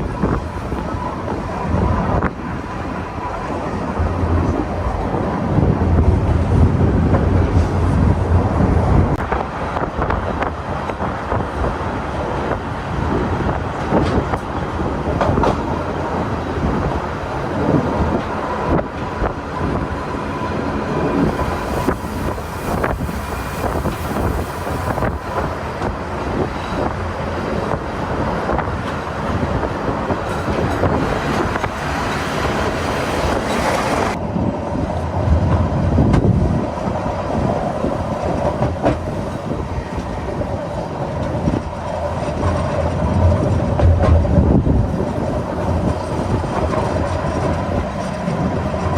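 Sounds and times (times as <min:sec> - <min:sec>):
train wheels clacking on track: 0:20.8 - 0:34.2, 0:37.9 - 0:48.9.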